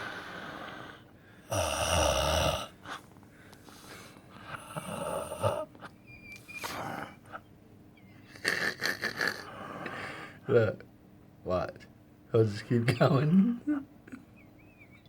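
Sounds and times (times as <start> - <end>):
soft breathing: 0.0 - 1.5, 2.8 - 4.8, 9.5 - 10.4
man snoring: 1.5 - 2.8, 4.6 - 5.7.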